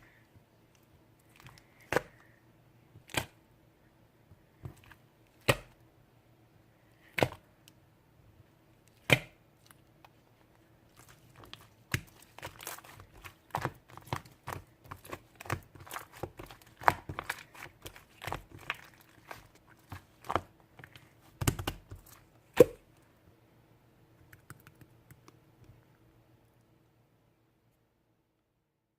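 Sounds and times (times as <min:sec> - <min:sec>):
slime squished by hand: 0:10.9 - 0:22.8.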